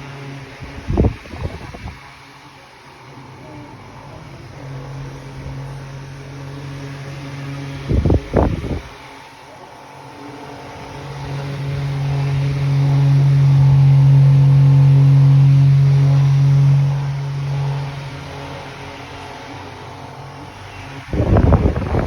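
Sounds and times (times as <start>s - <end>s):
small fan motor humming: 0.0s - 22.0s.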